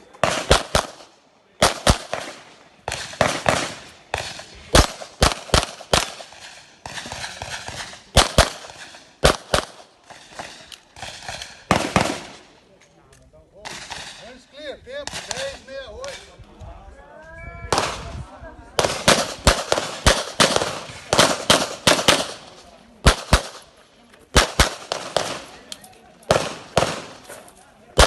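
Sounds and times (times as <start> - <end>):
pistol shots echoing: 0.2 - 12.4, 18.8 - 23.7, 24.3 - 25.7, 26.3 - 27.3.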